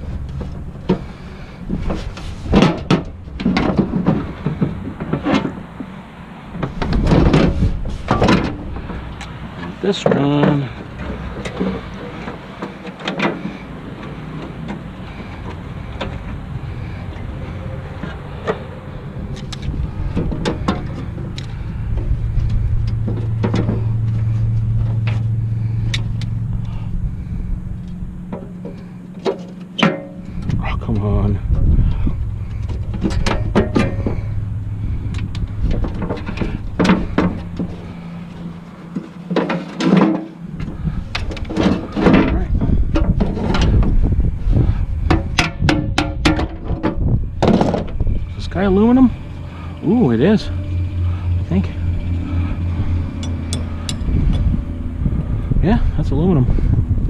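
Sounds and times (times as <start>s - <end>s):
low rumble: 0.0s - 9.8s, 13.4s - 57.0s
metal clatter: 27.7s - 55.0s
metal grill parts clanking: 27.9s - 44.1s, 45.0s - 55.0s.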